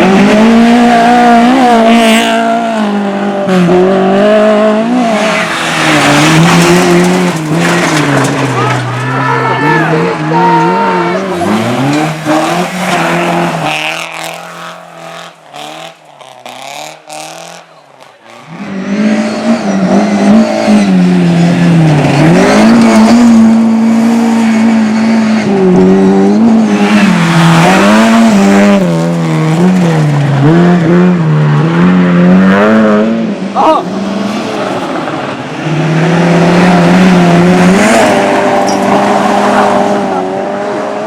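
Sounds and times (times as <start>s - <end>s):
race car engine revving: 0.0s - 41.0s.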